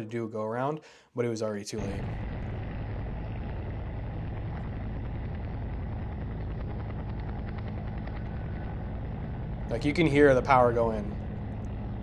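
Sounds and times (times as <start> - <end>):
light aircraft engine: 1.8 - 12.0.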